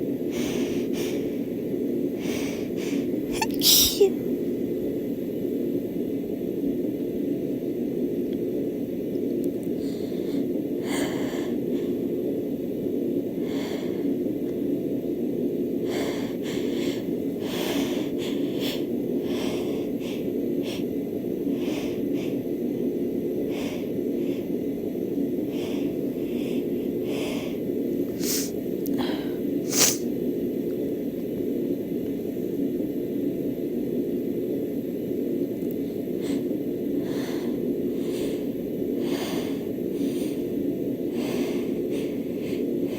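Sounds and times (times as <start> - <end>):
steady low hum: 0.0 - 42.9
woman's sharp in-breaths and snorts: 3.3 - 4.1, 28.1 - 28.6, 29.7 - 30.0
woman sneezing: 3.3 - 4.2, 29.7 - 30.0.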